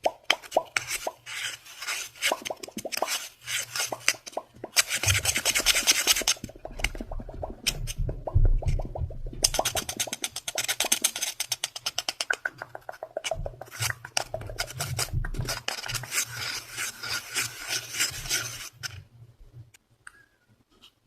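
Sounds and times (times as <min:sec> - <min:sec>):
rhythmic scratching on surface: 0:00.9 - 0:11.5, 0:12.7 - 0:18.8.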